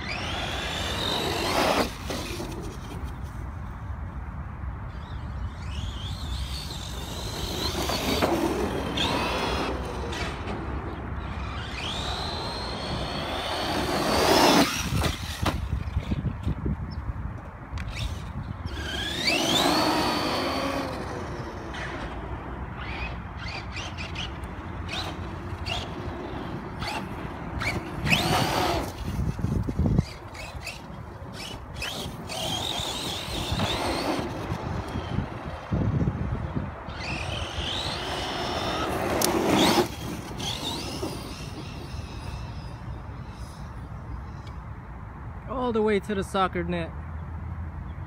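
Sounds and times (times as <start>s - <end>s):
rc truck motor whining: 0.0s - 3.2s, 4.9s - 16.3s, 17.8s - 44.7s
tyre and drivetrain noise: 0.0s - 45.0s.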